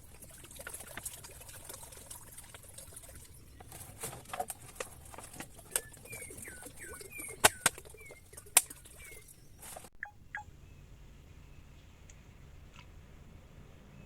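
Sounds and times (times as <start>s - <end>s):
small birds calling: 5.5s - 10.5s.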